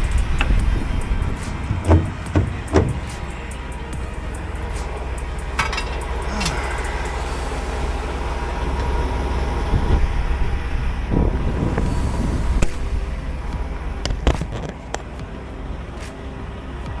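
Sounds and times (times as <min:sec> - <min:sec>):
sharp clicks and clunks: 0:00.0 - 0:03.7
diesel engine rumbling: 0:00.0 - 0:17.0.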